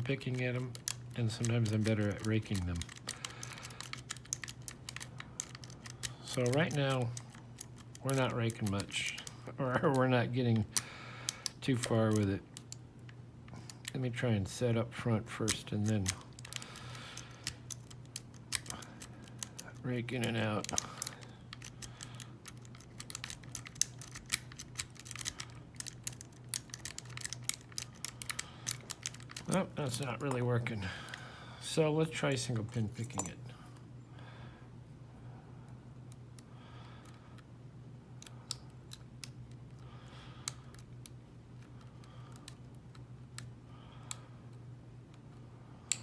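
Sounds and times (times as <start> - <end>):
lock pins clicking against rake: 0.0 - 14.1, 15.3 - 31.2, 32.2 - 33.4
steady low hum: 0.0 - 46.0.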